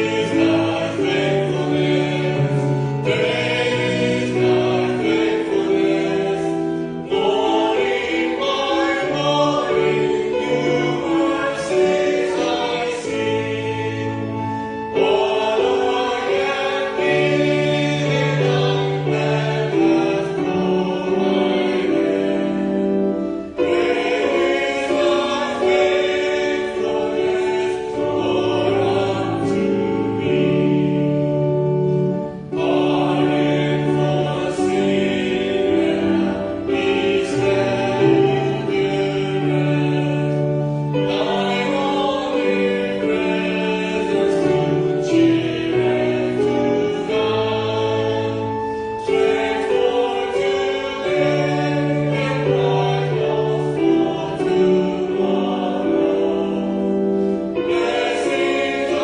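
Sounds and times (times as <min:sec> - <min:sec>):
held accompaniment chords: 0:00.0 - 0:59.0
voices singing a hymn: 0:00.0 - 0:59.0.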